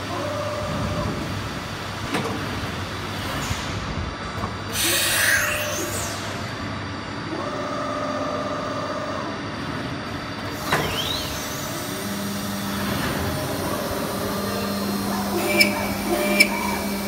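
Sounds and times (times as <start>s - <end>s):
lathe motors whining: 4.9s - 17.0s.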